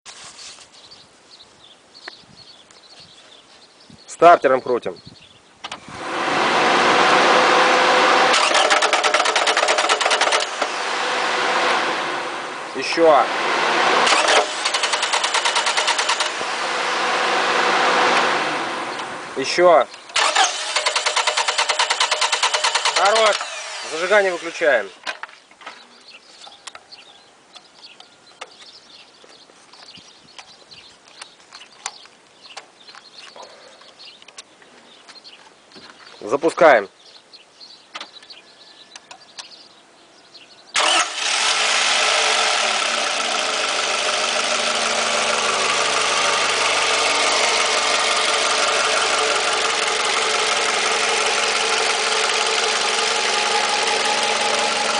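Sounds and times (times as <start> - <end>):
small birds chirping: 0.5 - 5.7, 23.0 - 40.8
engine cranking on starter: 5.6 - 12.0, 13.3 - 19.1, 20.1 - 24.8, 40.8 - 54.9.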